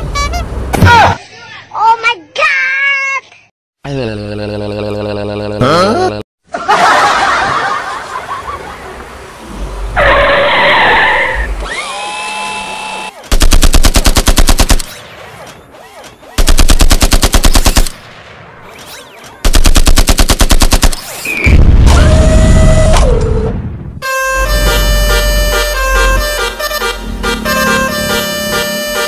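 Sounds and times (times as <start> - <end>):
rapid automatic gunfire: 13.3 - 15.0, 16.2 - 18.0, 19.4 - 21.2.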